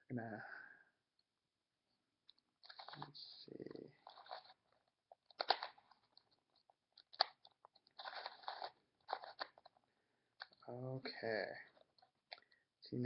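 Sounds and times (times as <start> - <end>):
puzzle cube clicking turns: 2.3 - 9.8, 10.4 - 10.6.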